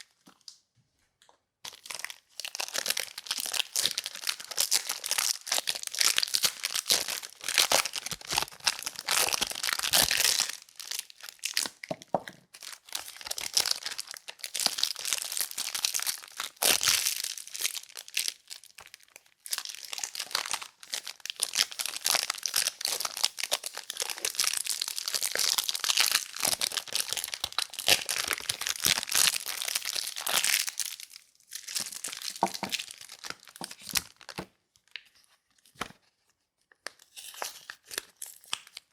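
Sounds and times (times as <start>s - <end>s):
wrapper tearing: 1.7s - 11.9s, 19.5s - 35.0s, 36.9s - 38.9s.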